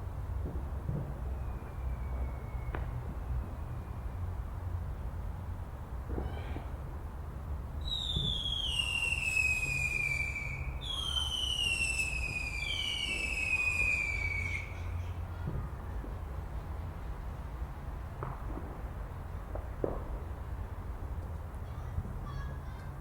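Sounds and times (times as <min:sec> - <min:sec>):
faint firework pops: 0:00.4 - 0:01.3, 0:02.1 - 0:03.4, 0:06.0 - 0:07.0, 0:08.0 - 0:08.5, 0:12.2 - 0:13.4, 0:15.4 - 0:16.4, 0:18.0 - 0:21.4
whistling fireworks: 0:00.4 - 0:04.6, 0:06.0 - 0:06.8, 0:07.8 - 0:16.2.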